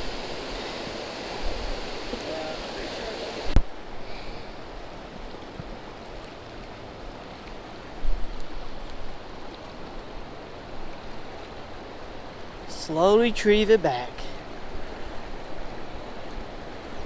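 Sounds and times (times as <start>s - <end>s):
wind buffeting microphone: 0.0s - 3.6s
wind hissing: 0.0s - 4.8s
water: 0.0s - 17.0s.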